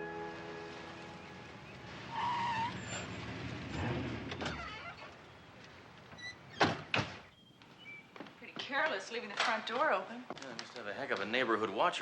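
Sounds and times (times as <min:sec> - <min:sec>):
car pulling up: 0:00.1 - 0:08.1
tires squealing: 0:01.2 - 0:05.3.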